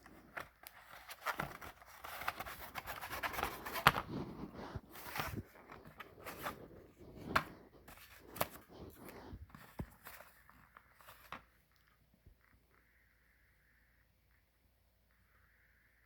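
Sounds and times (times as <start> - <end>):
packaging clicks and rustles: 0.0 - 12.0.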